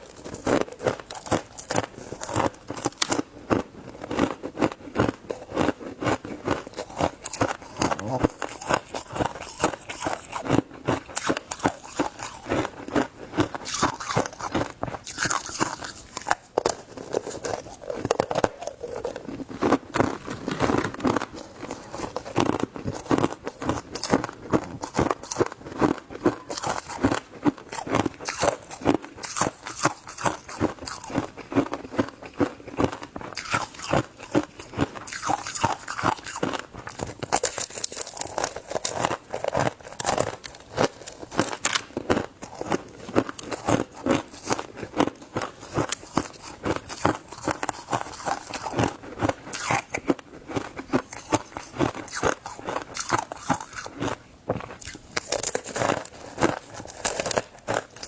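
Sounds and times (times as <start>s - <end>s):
ice crunching being chewed: 0.0s - 58.0s.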